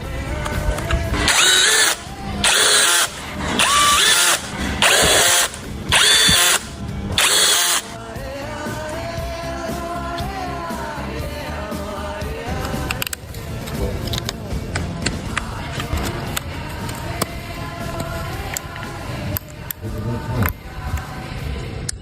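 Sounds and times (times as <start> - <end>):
background music: 0.0 - 22.0
power tool motor whine: 1.2 - 8.0.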